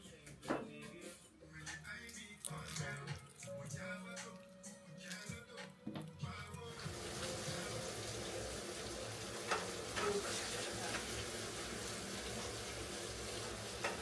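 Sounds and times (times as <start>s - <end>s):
food sizzling in frying pan: 6.7s - 14.0s
utensil clicking against pan: 9.4s - 10.2s, 13.8s - 14.0s.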